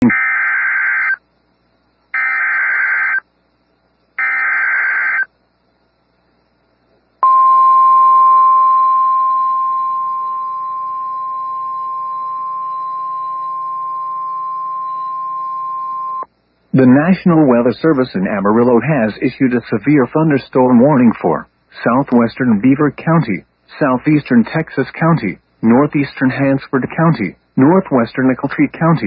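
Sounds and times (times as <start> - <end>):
buzzy digital data bursts: 2.1 - 3.2, 4.2 - 5.3, 8.8 - 20.4
steady warning alarm tone: 2.2 - 3.3, 4.2 - 5.3, 7.2 - 19.1.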